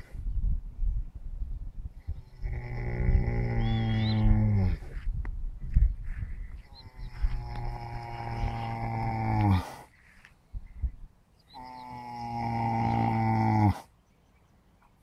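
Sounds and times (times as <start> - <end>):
horse snoring: 2.4 - 4.9, 7.3 - 9.9, 11.6 - 13.9.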